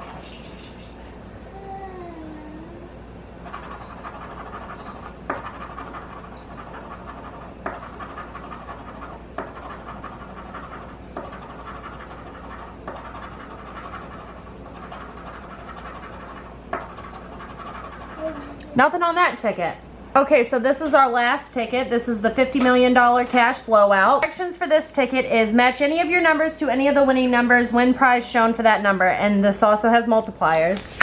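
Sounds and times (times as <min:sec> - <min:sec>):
scratch ticket scraping: 0:00.0 - 0:01.4, 0:03.5 - 0:18.4.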